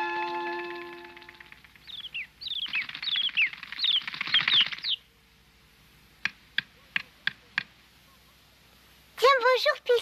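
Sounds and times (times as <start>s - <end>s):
small bird chirping: 0.2s - 5.1s
sharp taps: 6.2s - 7.8s.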